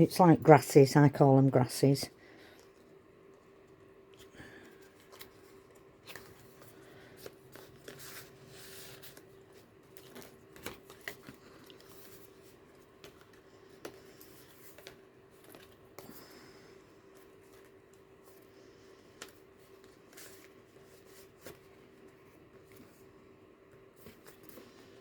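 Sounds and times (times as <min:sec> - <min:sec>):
faint steady hum: 0:00.0 - 0:25.0
paper pages rustling: 0:04.5 - 0:16.5, 0:17.1 - 0:23.2, 0:23.8 - 0:25.0.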